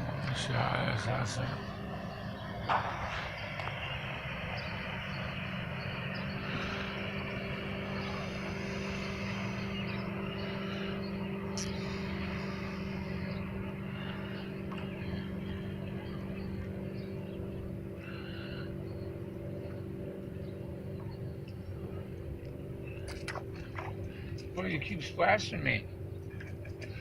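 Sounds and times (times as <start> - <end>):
engine humming: 0.0 - 27.0
higher hum: 0.0 - 27.0.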